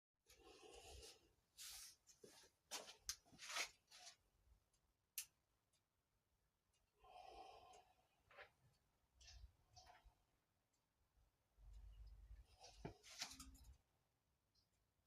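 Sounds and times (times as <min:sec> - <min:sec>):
soft rustle: 0:01.0 - 0:04.2.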